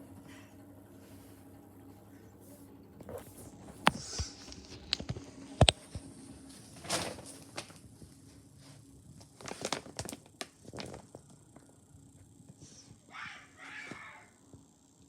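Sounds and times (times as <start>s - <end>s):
soft rustling and crinkling: 3.0s - 11.8s.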